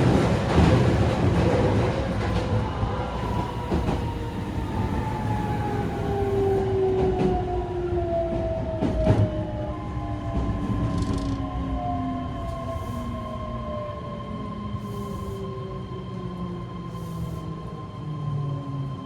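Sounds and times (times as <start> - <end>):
wheels rumbling on rail: 0.0 - 18.0
rail-joint clicks: 10.7 - 11.5.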